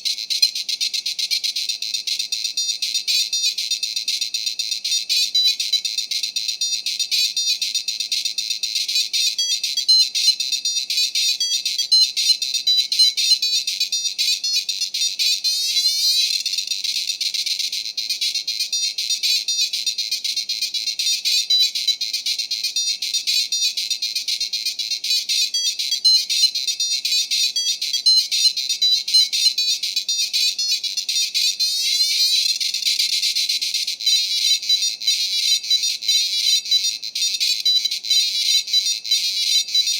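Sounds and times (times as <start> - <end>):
computer speaker beeper music: 9.0 - 16.4, 25.1 - 33.1.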